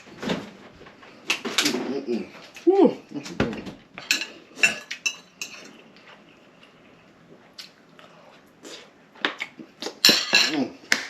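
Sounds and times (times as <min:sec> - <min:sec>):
cutlery clinking against dish: 0:04.0 - 0:05.8, 0:10.0 - 0:10.7.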